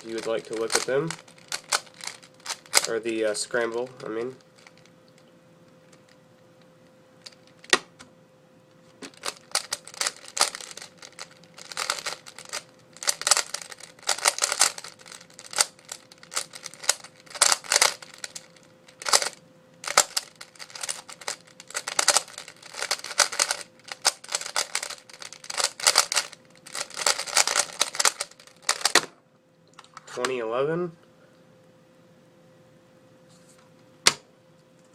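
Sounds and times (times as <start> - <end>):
puzzle cube plastic clicking: 9.2 - 29.0.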